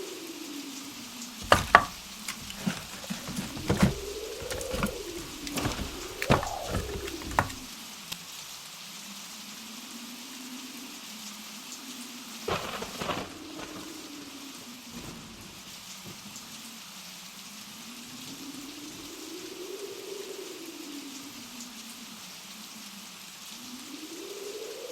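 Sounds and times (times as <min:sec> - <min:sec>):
sharp knocks: 0:01.4 - 0:07.6.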